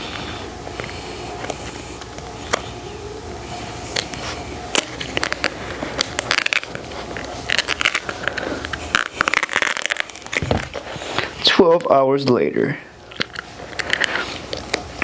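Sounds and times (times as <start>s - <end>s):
plastic sheet scraping: 4.2s - 11.5s
plastic sheet crackling: 4.7s - 11.4s.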